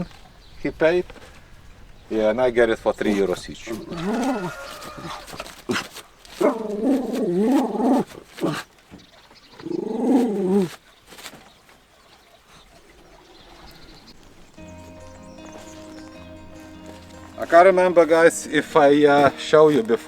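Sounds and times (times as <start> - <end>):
dog howling: 3.7 - 5.4, 6.4 - 8.6.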